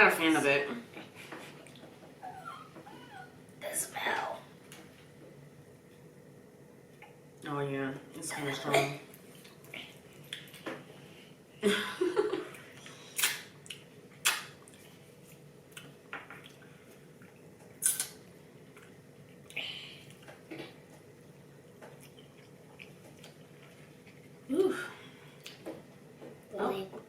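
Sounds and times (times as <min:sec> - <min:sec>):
chewing with mouth smacks: 0:09.2 - 0:10.6, 0:13.2 - 0:20.4, 0:21.7 - 0:24.3.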